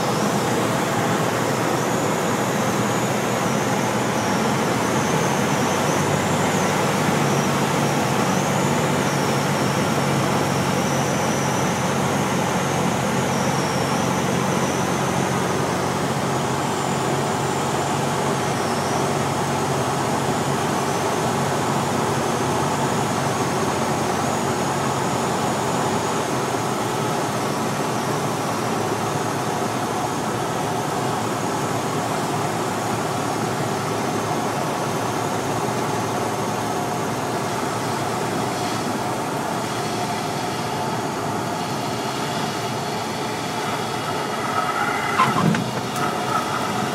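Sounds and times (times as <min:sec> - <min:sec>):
propeller plane engine droning: 0:00.0 - 0:46.9
high wavering whine: 0:39.6 - 0:46.9.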